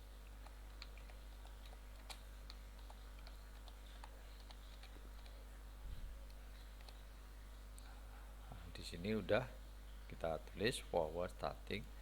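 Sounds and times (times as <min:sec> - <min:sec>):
low electrical hum: 0:00.0 - 0:12.0
keyboard typing: 0:00.3 - 0:05.4.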